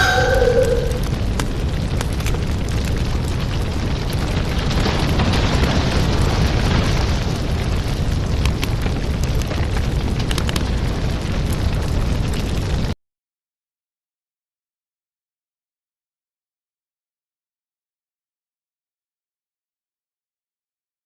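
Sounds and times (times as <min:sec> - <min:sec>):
crackles and pops: 0:00.0 - 0:13.0
deep continuous rumble: 0:00.0 - 0:13.0.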